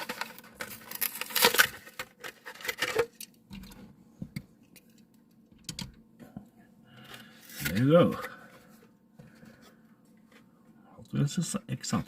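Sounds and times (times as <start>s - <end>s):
plastic blister pack crackling: 0.0s - 3.2s.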